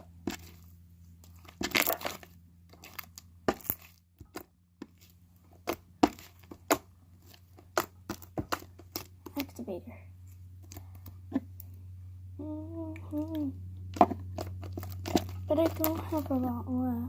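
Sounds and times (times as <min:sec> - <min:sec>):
slime crackling and snapping: 0:01.4 - 0:04.4.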